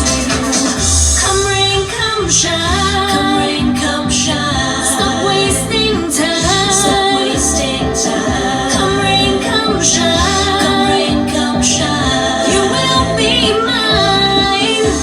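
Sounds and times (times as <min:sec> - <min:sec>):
pop band backing: 0:00.0 - 0:15.0
woman singing: 0:00.0 - 0:15.0.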